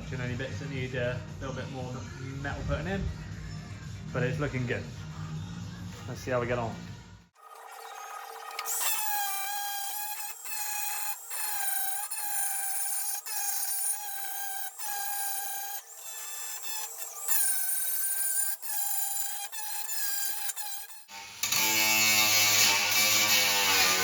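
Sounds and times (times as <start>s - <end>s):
angle grinder whining on metal: 8.6s - 24.0s.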